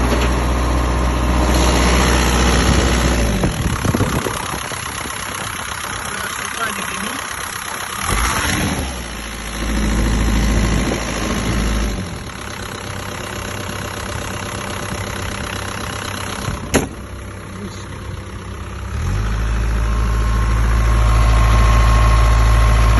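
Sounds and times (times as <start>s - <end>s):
excavator diesel engine running: 0.0s - 22.9s
sharp knock: 16.7s - 17.0s.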